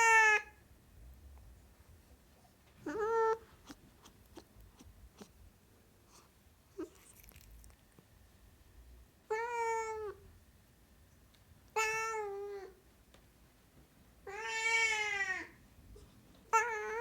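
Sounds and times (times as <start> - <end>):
cat meowing: 0.0 - 0.6, 2.8 - 4.5, 9.3 - 10.2, 11.7 - 12.8, 14.2 - 15.6, 16.5 - 17.0.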